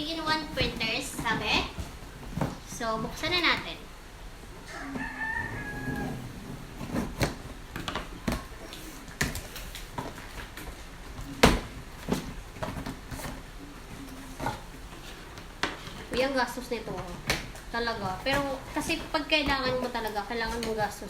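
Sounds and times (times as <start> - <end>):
knocks and scrapes of cardboard flaps: 5.0 - 10.6.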